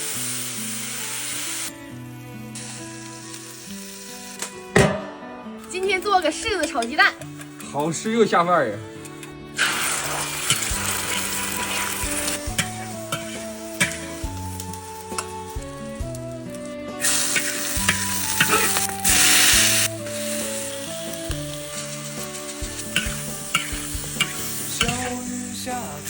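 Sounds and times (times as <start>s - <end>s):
food sizzling in oil: 0.0s - 4.8s, 8.9s - 26.0s
background music: 0.0s - 26.0s
spatula clicking in pan: 9.1s - 14.2s, 17.4s - 19.7s, 22.1s - 25.2s.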